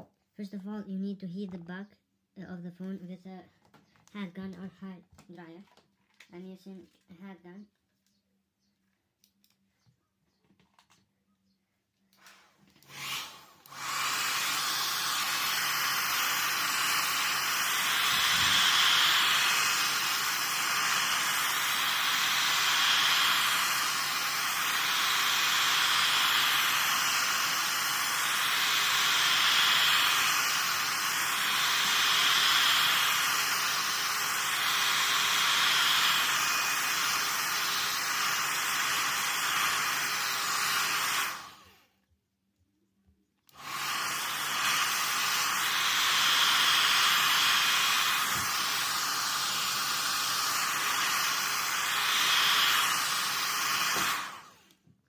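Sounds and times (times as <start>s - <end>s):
heat gun blowing air: 12.1s - 42.0s, 43.5s - 54.8s.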